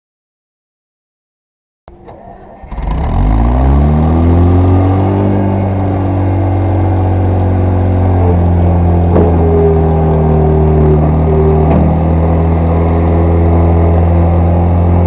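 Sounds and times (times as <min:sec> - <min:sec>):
engine cranking: 0:01.9 - 0:05.2
engine running at fast idle: 0:01.9 - 0:15.0.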